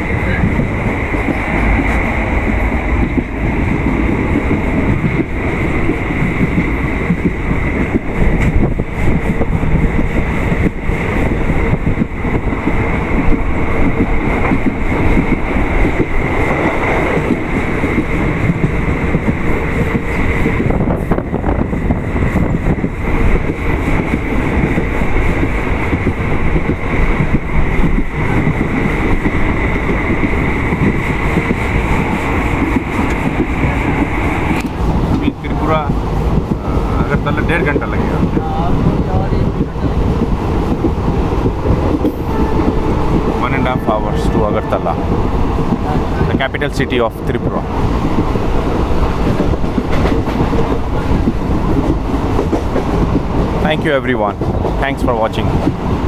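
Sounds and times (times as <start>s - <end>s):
train knocks and clatter: 0.0s - 56.0s
train wheels rumbling on rails: 0.0s - 56.0s.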